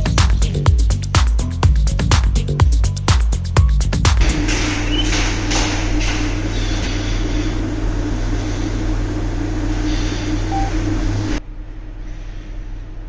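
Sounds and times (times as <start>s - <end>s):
steady mechanical hum: 3.6s - 13.0s.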